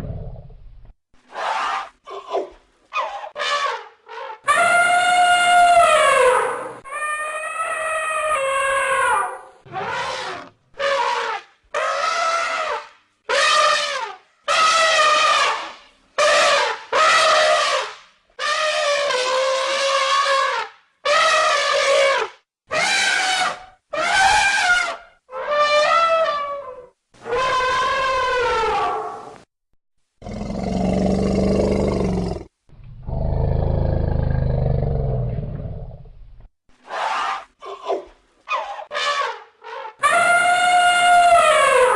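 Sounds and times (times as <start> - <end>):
elephant trumpeting: 3.0 - 15.6, 16.2 - 29.2, 36.9 - 41.9
elephant roaring: 30.2 - 35.9.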